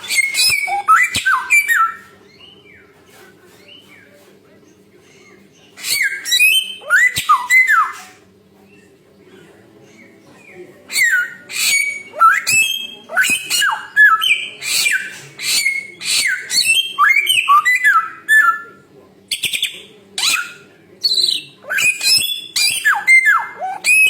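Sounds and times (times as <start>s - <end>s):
bird whistling and chattering: 0.0s - 2.9s, 5.7s - 8.2s, 10.9s - 24.0s.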